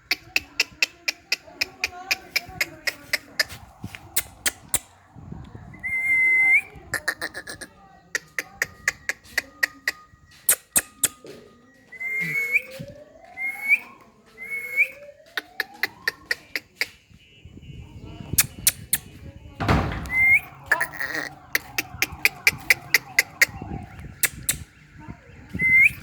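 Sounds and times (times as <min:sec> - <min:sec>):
parrot calls and whistles: 0:05.8 - 0:07.7, 0:08.6 - 0:11.3, 0:11.9 - 0:16.8, 0:19.7 - 0:24.8, 0:25.5 - 0:26.0
sharp clicks: 0:18.4 - 0:19.1, 0:24.2 - 0:24.7.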